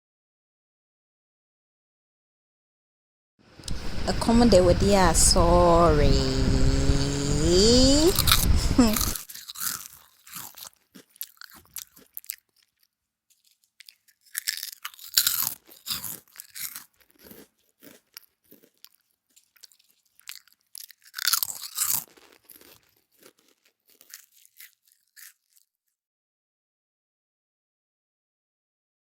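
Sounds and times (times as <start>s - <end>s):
crisp crunching and crackling: 8.2s - 25.8s.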